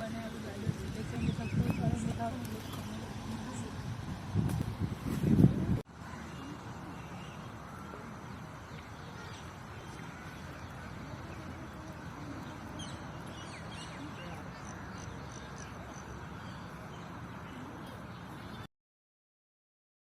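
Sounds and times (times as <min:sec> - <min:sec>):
garden ambience: 0:00.0 - 0:18.7
low rumbling wind: 0:00.0 - 0:18.7.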